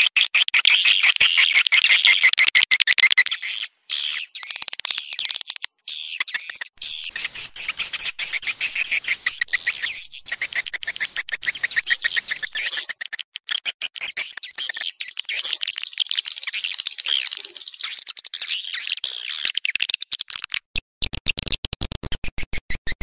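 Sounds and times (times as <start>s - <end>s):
rapid bird chirping and twittering: 0.0s - 23.0s.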